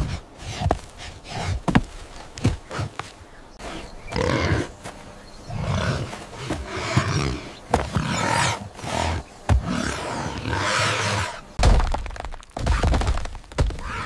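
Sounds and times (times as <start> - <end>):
animal growls and roars: 5.5 - 11.4.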